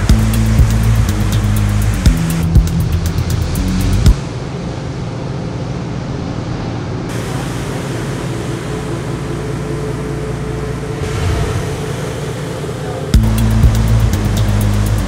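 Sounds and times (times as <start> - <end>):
surf breaking on beach: 11.0 - 13.2.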